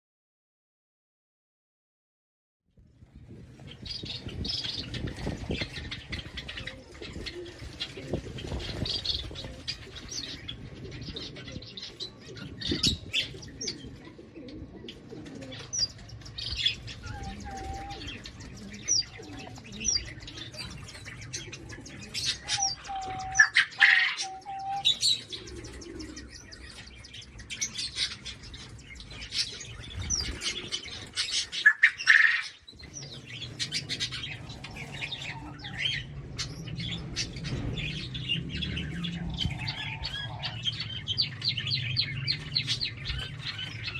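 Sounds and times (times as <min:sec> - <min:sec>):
cage birds chirping: 0:02.8 - 0:43.9.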